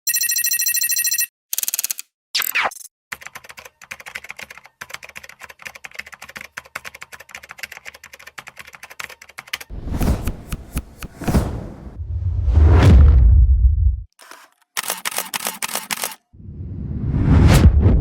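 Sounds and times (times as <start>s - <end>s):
low whoosh: 9.7s - 14.1s, 16.4s - 18.0s.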